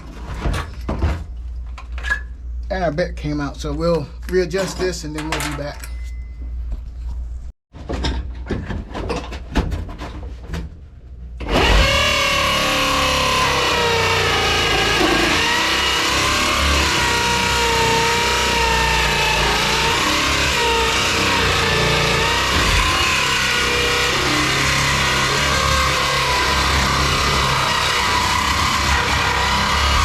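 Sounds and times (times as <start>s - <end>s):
electric drill cutting sheet metal: 11.4s - 30.0s.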